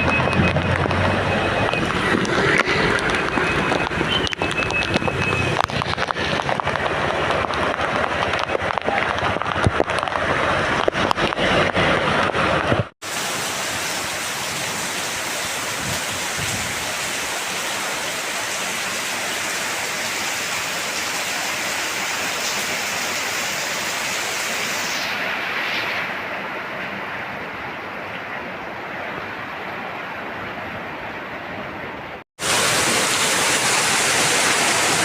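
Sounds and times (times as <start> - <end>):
rain drops on hard surface: 0.0 - 26.9, 32.4 - 35.0
steady downpour hiss: 13.0 - 29.9, 32.4 - 35.0.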